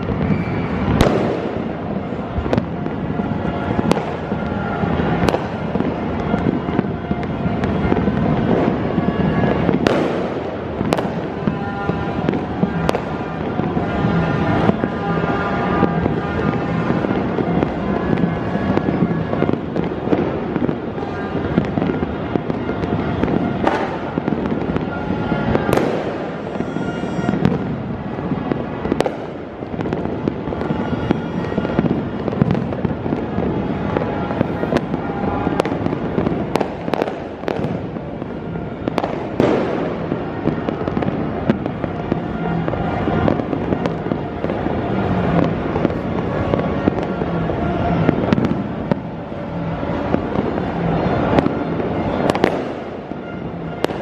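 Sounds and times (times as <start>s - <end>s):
fireworks and firecrackers banging: 0.0s - 54.0s.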